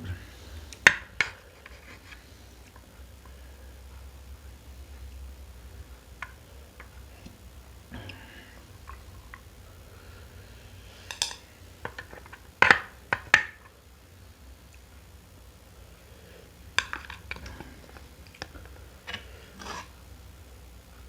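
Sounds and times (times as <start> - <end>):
cutlery clinking against a plate: 11.0 - 11.4.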